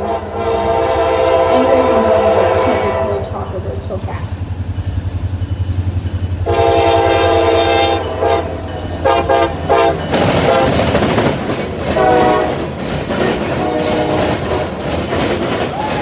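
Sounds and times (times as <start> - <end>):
train horn blasts: 0.0 - 3.4, 6.4 - 11.0, 11.9 - 12.8, 13.4 - 14.8
fast train passing: 0.0 - 16.0.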